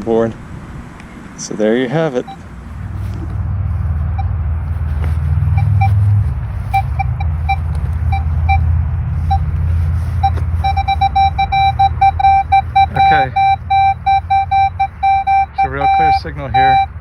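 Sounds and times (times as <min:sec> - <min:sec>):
steady low rumble: 0:00.0 - 0:16.2
metal detector beeping: 0:02.2 - 0:02.4, 0:05.5 - 0:09.5, 0:10.2 - 0:17.0.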